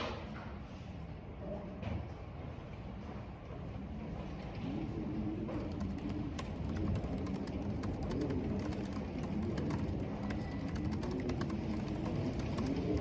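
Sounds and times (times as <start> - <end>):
keyboard typing clicks: 5.6 - 13.0.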